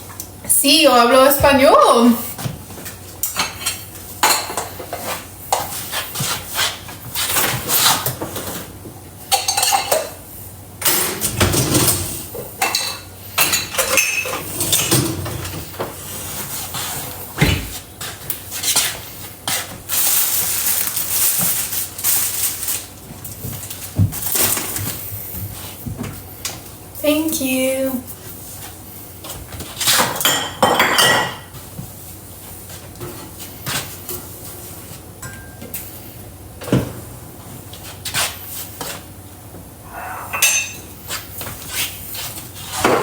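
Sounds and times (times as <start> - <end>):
dishes and cutlery clinking: 9.3 - 10.2, 10.8 - 15.6, 29.8 - 31.5, 40.3 - 41.2.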